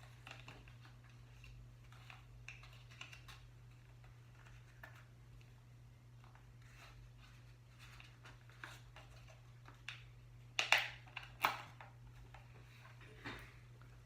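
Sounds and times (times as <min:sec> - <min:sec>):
packaging clicks and rustles: 0:00.0 - 0:05.5
low steady hum: 0:00.0 - 0:14.0.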